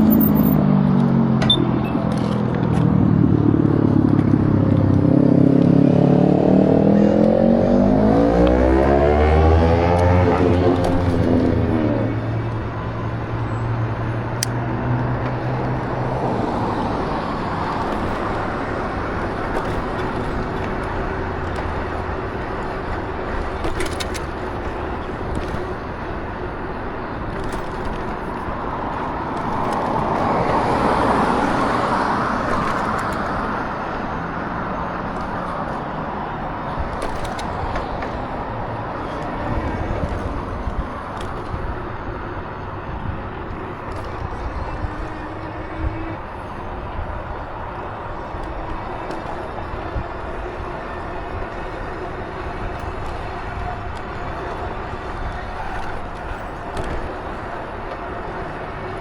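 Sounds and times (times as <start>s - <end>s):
vehicle engine running: 0.0s - 59.0s
wind and road noise: 0.0s - 59.0s.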